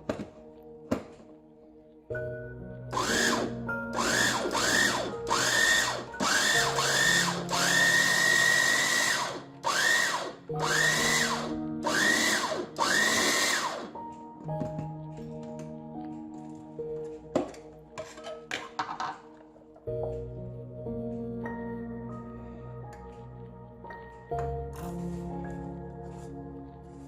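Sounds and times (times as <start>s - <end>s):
food chopper motor pulsing: 2.9s - 13.9s.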